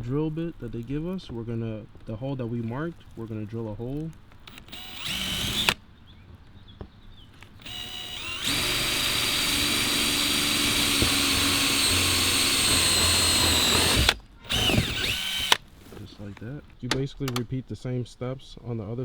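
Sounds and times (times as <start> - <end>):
power drill boring: 4.5 - 5.8, 7.4 - 15.8.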